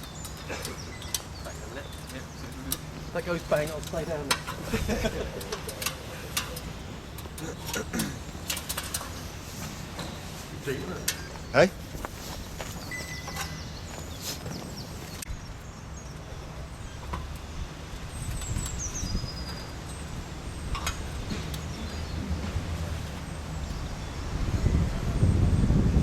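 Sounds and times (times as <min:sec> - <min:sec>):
scattered clicks: 0:00.0 - 0:09.3
high falling chirps: 0:00.0 - 0:25.5
steady low rumble: 0:00.0 - 0:26.0.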